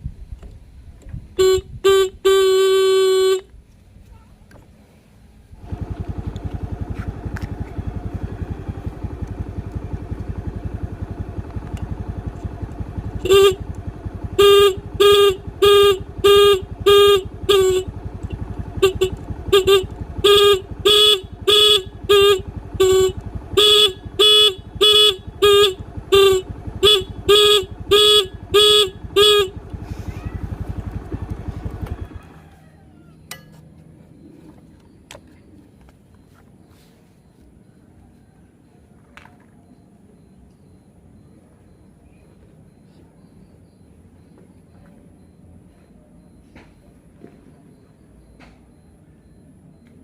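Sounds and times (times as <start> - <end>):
motorcycle horn beeping: 1.4 - 3.5, 5.6 - 32.4
low running hum: 5.4 - 36.6.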